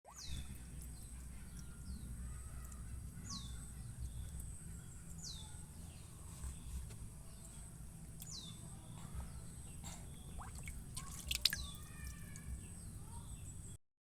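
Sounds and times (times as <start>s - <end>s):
low rumble: 0.3s - 11.0s.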